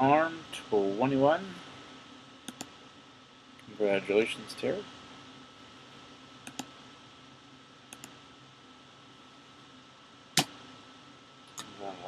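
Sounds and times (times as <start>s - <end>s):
faint electrical hum: 0.0s - 12.0s
computer mouse clicks: 2.4s - 2.8s, 6.4s - 6.8s, 7.9s - 8.2s.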